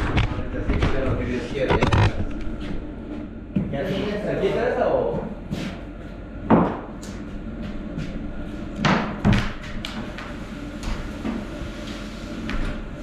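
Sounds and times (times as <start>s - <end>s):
steady low hum: 0.0s - 13.0s
knocks and thuds of wood: 8.8s - 9.8s.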